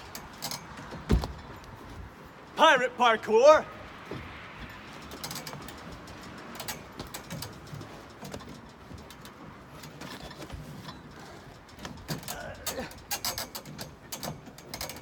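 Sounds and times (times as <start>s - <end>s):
knocks and taps on a boat: 1.0s - 1.5s.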